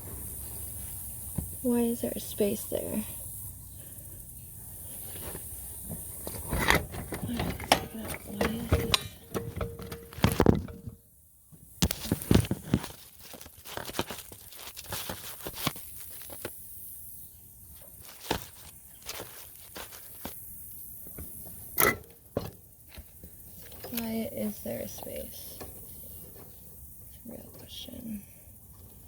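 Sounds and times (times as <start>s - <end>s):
knocks and scrapes of hand work: 5.1s - 11.0s.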